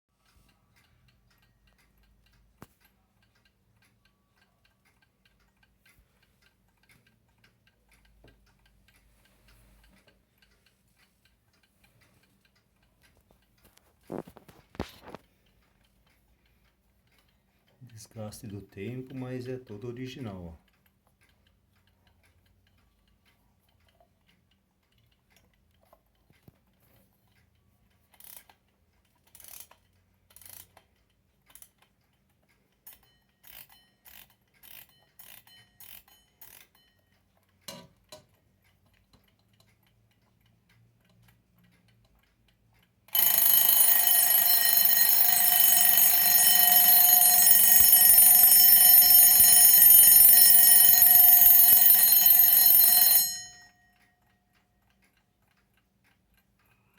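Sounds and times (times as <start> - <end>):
small scattered clicks: 20.7 - 53.2
alarm bell ringing: 43.1 - 54.0.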